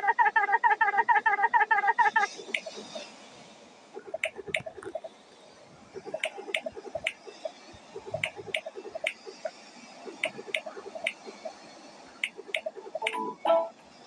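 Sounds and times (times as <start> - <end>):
countdown timer ticking: 12.2 - 13.7.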